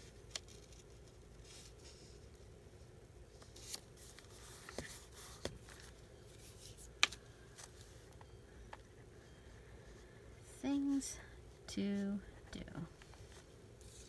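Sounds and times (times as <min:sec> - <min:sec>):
paper rustling: 0:03.4 - 0:08.1, 0:13.1 - 0:14.0.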